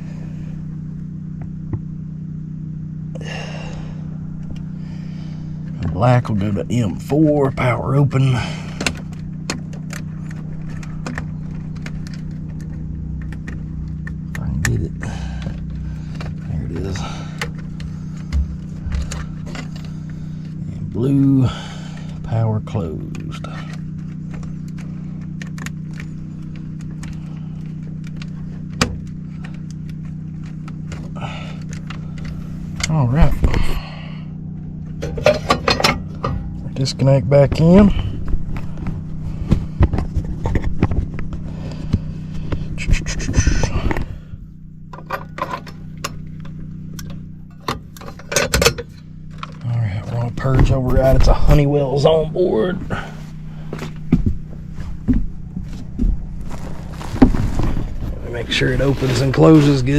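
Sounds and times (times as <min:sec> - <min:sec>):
steady low hum with tones: 0:00.0 - 0:59.9
metallic clicks of wires and tool: 0:35.0 - 0:36.6, 0:44.9 - 0:49.7
handling rustle: 0:52.7 - 0:59.9.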